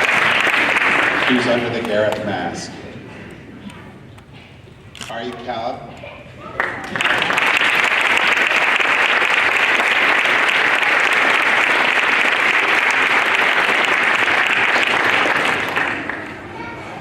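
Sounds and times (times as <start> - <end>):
audience applauding: 0.0 - 2.2, 6.6 - 16.4.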